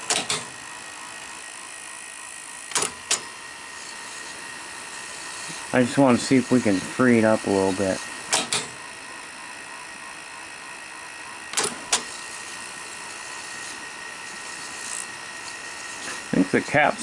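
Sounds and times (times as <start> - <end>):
tape deck mechanism whirring: 0.0 - 17.0.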